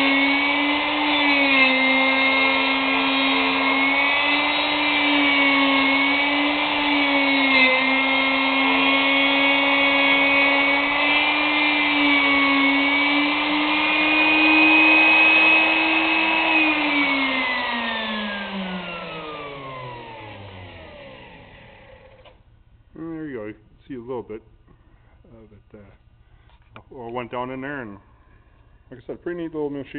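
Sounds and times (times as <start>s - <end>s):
router motor whining: 0.0s - 22.4s.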